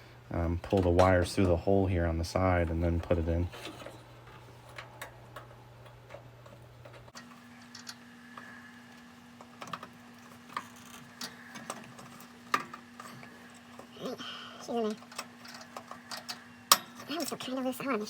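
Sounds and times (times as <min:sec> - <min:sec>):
faint steady hum: 0:00.0 - 0:18.0.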